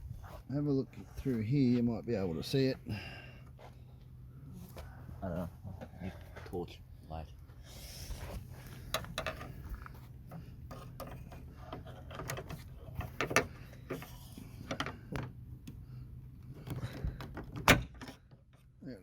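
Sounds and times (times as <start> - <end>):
low steady hum: 0.0 - 19.0
clicks taps and rattles in a door: 10.7 - 15.4.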